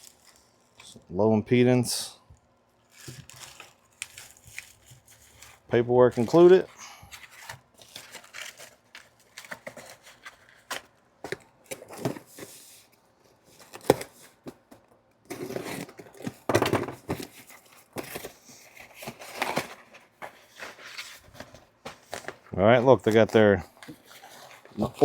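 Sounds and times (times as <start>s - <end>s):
packaging crinkling: 0.0s - 0.9s, 2.8s - 12.2s
paper and plastic rustling: 2.8s - 25.0s.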